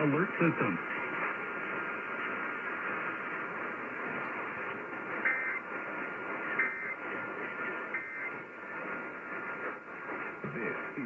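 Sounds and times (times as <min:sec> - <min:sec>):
radio static hiss: 0:00.0 - 0:11.0
warbling data burst: 0:05.2 - 0:05.6, 0:06.6 - 0:07.0, 0:07.9 - 0:08.3.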